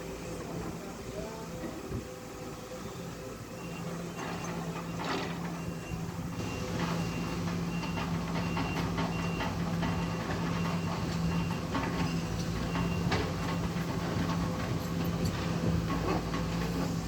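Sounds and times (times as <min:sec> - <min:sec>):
excavator diesel engine running: 0:00.0 - 0:17.0
high warning beep: 0:03.6 - 0:13.8
machine knocks and clanks: 0:04.2 - 0:17.0.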